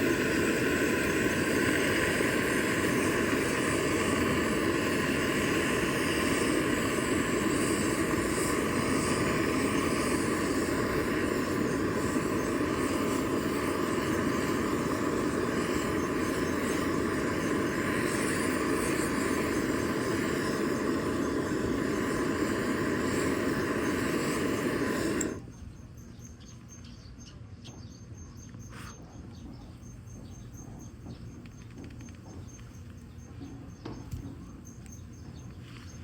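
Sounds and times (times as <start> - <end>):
gas torch hissing: 0.0 - 25.5.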